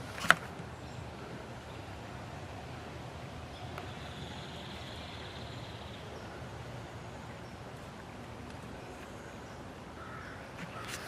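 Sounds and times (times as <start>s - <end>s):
low rumble and hiss: 0.0s - 11.0s
faint bird call: 8.8s - 11.0s.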